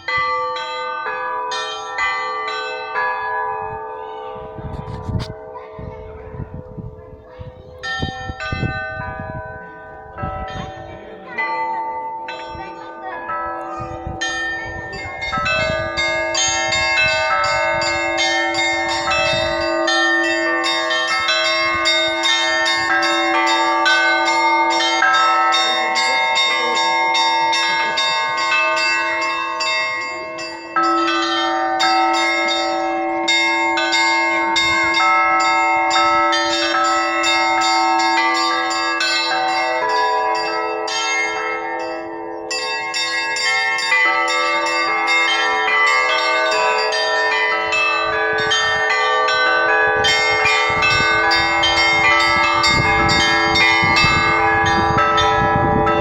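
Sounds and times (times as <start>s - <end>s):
high church bells pealing: 0.0s - 56.0s
middle bells ringing: 0.0s - 56.0s
low bell tone: 12.2s - 56.0s.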